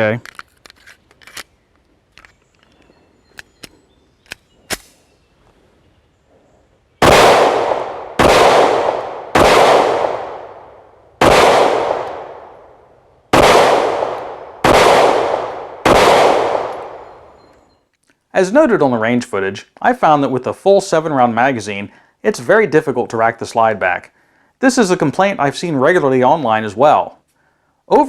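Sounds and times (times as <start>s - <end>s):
pistol handling clicks: 0.2s - 5.0s
pistol shots echoing: 7.0s - 12.7s, 13.3s - 17.4s.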